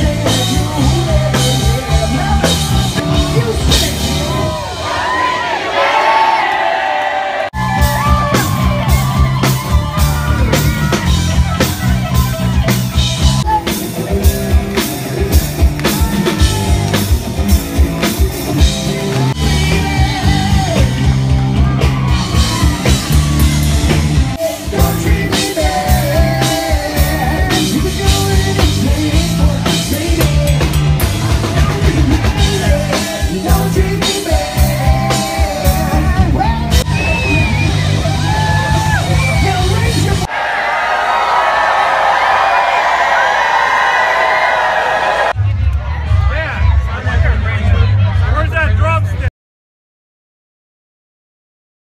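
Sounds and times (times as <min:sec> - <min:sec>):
lead vocalist singing: 0:00.0 - 0:04.8, 0:19.1 - 0:23.4, 0:24.4 - 0:37.4
bass guitar: 0:00.0 - 0:05.2, 0:07.5 - 0:40.3, 0:44.2 - 0:49.3
drum kit: 0:00.0 - 0:05.7, 0:07.6 - 0:40.3.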